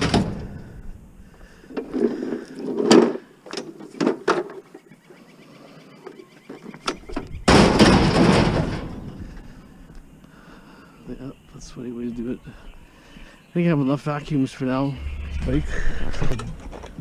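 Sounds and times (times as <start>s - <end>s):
metal crash with rattling: 7.5s - 9.4s
scrap metal knocks and clatters: 7.5s - 9.4s.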